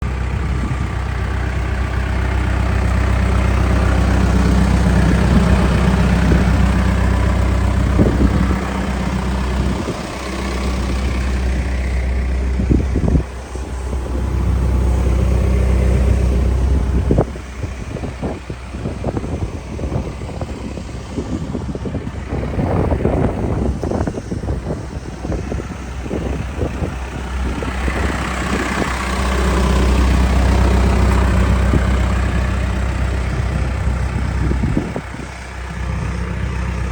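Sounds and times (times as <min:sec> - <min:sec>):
backhoe diesel engine running: 0:00.0 - 0:36.9.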